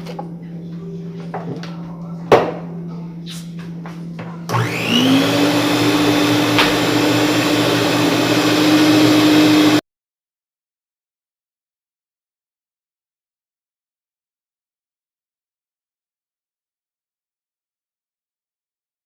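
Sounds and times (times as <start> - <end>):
electric blender whining: 4.5 - 9.8.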